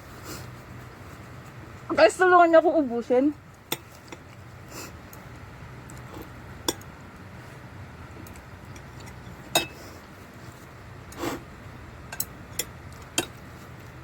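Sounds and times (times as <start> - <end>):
steady low hum: 0.0 - 14.0
utensils clinking on tableware: 9.5 - 9.8, 12.1 - 13.4.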